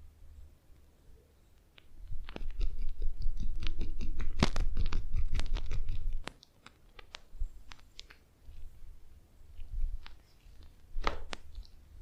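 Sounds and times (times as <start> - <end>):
hands scratching and rubbing hair: 2.1 - 8.8, 9.5 - 11.8.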